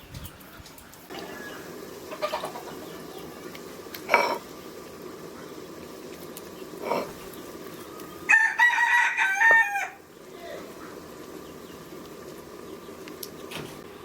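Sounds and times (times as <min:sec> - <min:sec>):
rooster crowing: 0:01.1 - 0:02.8, 0:07.8 - 0:10.5.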